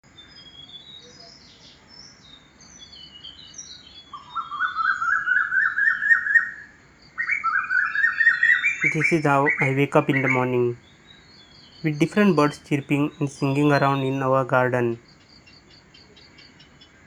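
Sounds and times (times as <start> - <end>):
garden birds chirping: 8.8 - 10.8, 11.7 - 15.0.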